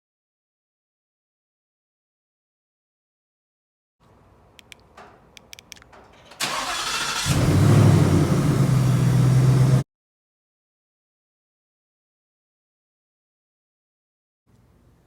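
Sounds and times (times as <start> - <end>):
engine starter cranking: 5.9 - 9.2
car engine idling: 6.3 - 9.8.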